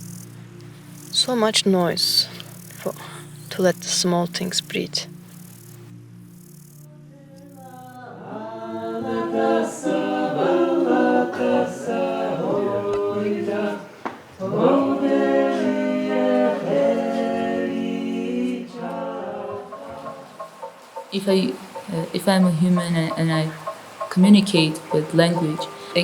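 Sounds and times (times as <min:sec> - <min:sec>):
voices singing in harmony: 0:06.9 - 0:26.0.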